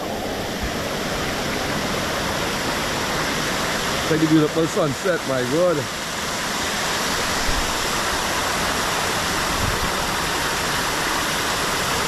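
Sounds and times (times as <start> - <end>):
water splashing from fountains: 0.0 - 12.0.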